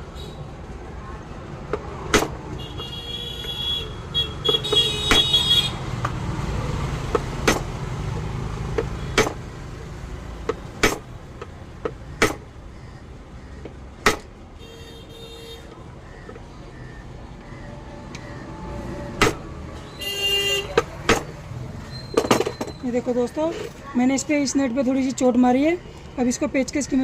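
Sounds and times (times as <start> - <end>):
sharp metal knocks: 1.7 - 2.4, 4.4 - 5.4, 7.1 - 7.8, 8.7 - 9.5, 10.4 - 12.5, 14.0 - 14.3, 19.2 - 19.5, 20.7 - 21.4, 22.1 - 22.8.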